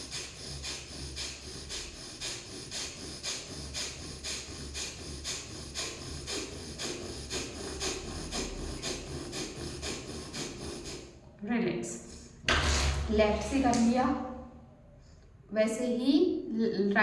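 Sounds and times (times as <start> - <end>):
rapid forceful nostril breathing: 0.0 - 11.2.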